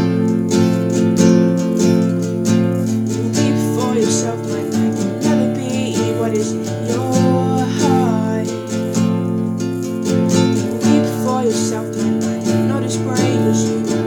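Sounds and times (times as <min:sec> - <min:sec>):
acoustic guitar strumming chords: 0:00.0 - 0:14.0
woman singing: 0:03.0 - 0:09.2, 0:10.5 - 0:14.0.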